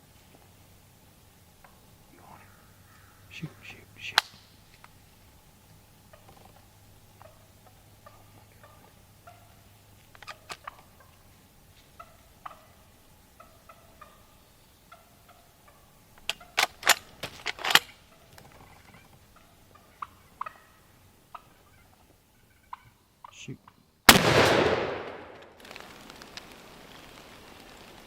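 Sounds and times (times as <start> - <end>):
turkey gobbling: 6.1 - 16.6, 18.0 - 23.5.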